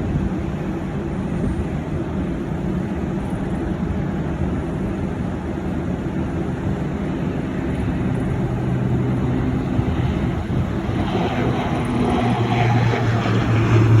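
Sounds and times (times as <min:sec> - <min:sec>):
jet engines rumbling: 0:00.0 - 0:14.0
low hum: 0:06.4 - 0:14.0.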